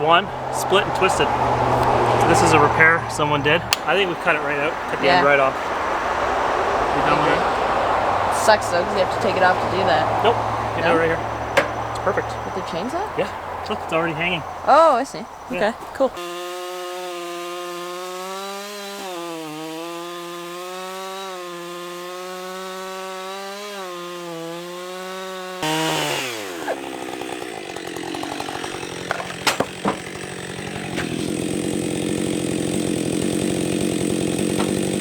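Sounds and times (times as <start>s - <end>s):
chainsaw cutting wood: 0.0s - 14.7s, 15.5s - 35.0s
chainsaw engine: 0.0s - 35.0s
sharp knocks: 11.5s - 12.0s, 28.2s - 30.2s, 34.5s - 35.0s.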